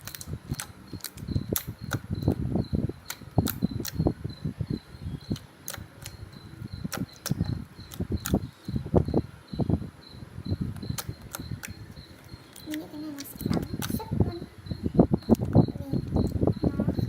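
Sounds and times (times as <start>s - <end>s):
slime squelching and popping: 0.0s - 2.4s, 3.0s - 4.0s, 5.3s - 6.2s, 12.5s - 14.0s.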